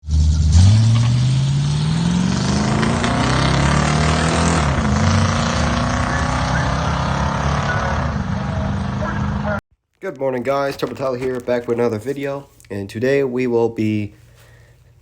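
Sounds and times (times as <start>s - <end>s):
car engine accelerating: 0.0s - 9.6s.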